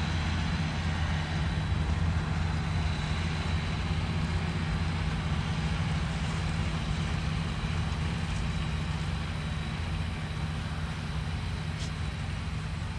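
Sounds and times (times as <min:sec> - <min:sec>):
vehicle engine humming: 0:00.0 - 0:12.9.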